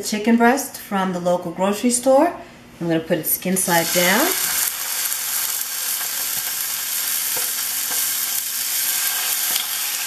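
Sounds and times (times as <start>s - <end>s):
chicken sizzling in a skillet: 3.6s - 10.0s.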